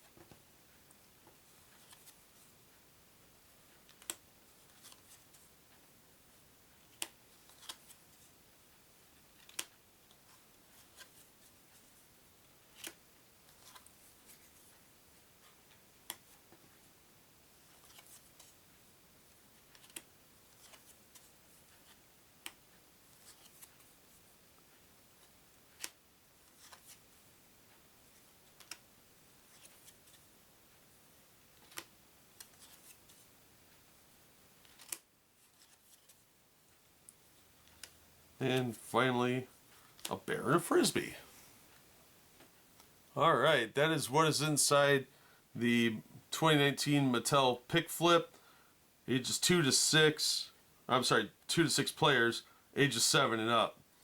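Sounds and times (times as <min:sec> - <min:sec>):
cards rustling: 0:03.9 - 0:05.4, 0:12.6 - 0:14.8, 0:17.6 - 0:18.6, 0:19.6 - 0:23.9, 0:25.8 - 0:27.0, 0:29.4 - 0:30.2, 0:31.6 - 0:33.2, 0:34.6 - 0:36.2
cardboard cards clicking: 0:31.6 - 0:33.0, 0:34.6 - 0:35.0.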